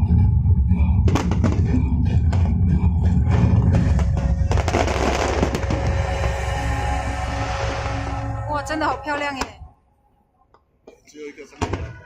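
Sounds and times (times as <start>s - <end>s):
background music with bass: 0.0s - 9.8s
firework bangs: 3.4s - 6.4s.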